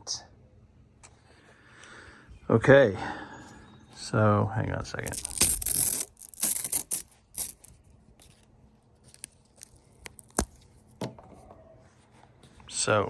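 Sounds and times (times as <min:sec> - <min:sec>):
straps being handled: 0:05.0 - 0:10.6.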